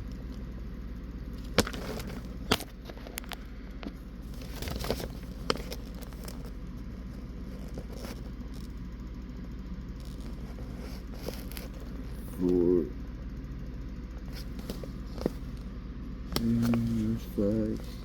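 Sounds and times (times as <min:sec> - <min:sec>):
steady low hum: 0:00.0 - 0:18.0
paper pages rustling: 0:01.4 - 0:03.4, 0:04.2 - 0:08.8, 0:10.0 - 0:12.3, 0:14.2 - 0:15.7, 0:16.3 - 0:18.0.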